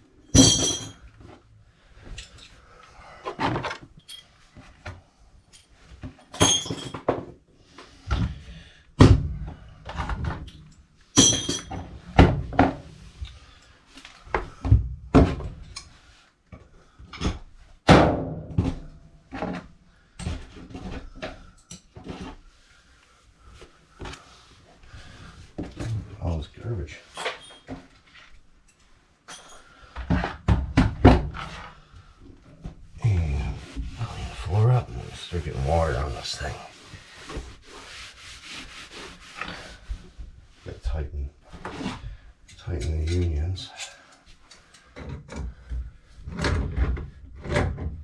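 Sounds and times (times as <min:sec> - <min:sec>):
tools and metal pipes clanking: 0:00.2 - 0:01.4, 0:03.3 - 0:04.7, 0:05.5 - 0:07.3, 0:09.9 - 0:12.8, 0:27.1 - 0:28.1, 0:28.7 - 0:30.3.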